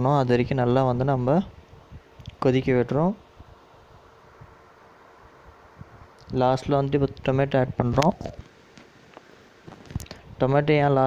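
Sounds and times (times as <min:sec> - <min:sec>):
faint steady hiss: 0:00.0 - 0:11.0.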